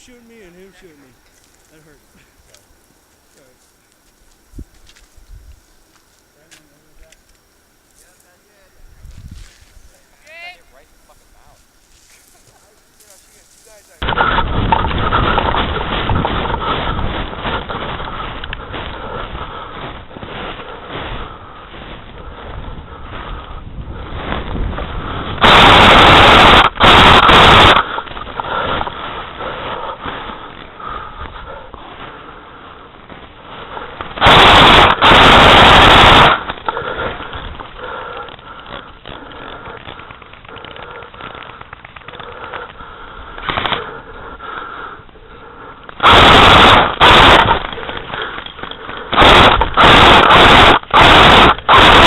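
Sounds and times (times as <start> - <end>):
airsoft gun full-auto bursts: 25.4 - 28.8, 34.2 - 37.0, 46.0 - 52.0.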